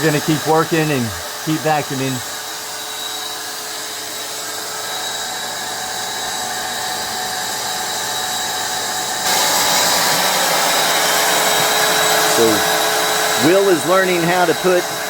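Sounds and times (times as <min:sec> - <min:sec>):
vacuum motor whining: 0:00.0 - 0:15.0.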